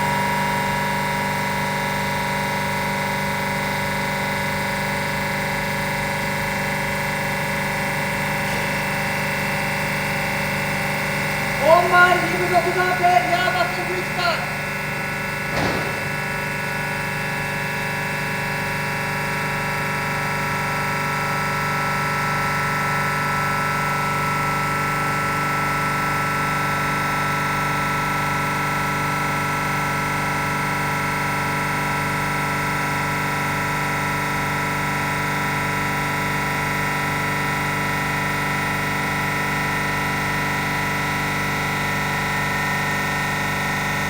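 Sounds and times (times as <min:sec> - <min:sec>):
compressor drone with whining tones: 0:07.5 - 0:20.1.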